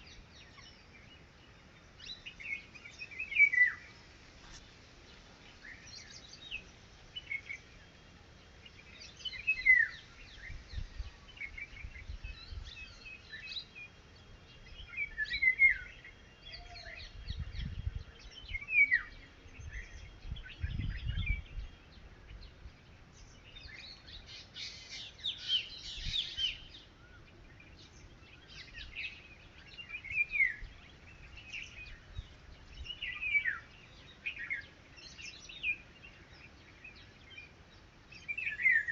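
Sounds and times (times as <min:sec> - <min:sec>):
wind rumble on microphone: 0:08.8 - 0:37.4.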